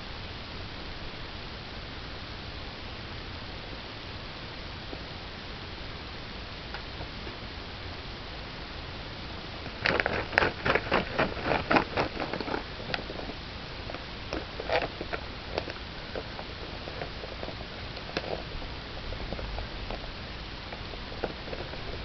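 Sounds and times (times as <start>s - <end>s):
rabbit clicking: 9.6s - 20.1s.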